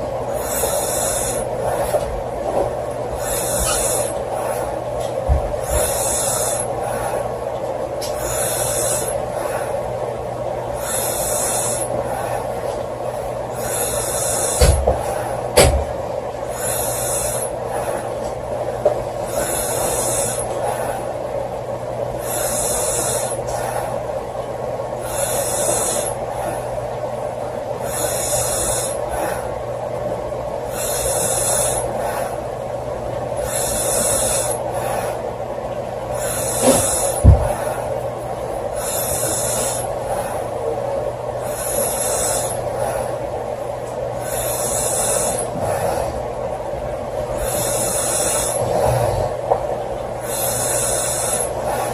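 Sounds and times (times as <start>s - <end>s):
steady background hum: 0.0s - 51.9s
woman snoring: 0.3s - 2.0s, 3.2s - 4.8s, 5.6s - 7.3s, 8.2s - 9.8s, 10.8s - 12.6s, 13.5s - 15.4s, 16.5s - 18.1s, 19.2s - 21.1s, 22.2s - 23.9s, 25.0s - 26.7s, 27.8s - 29.5s, 30.7s - 32.4s, 33.4s - 35.2s, 36.1s - 37.9s, 38.7s - 40.5s, 41.4s - 43.2s, 44.2s - 46.2s, 47.3s - 49.4s, 50.2s - 51.9s.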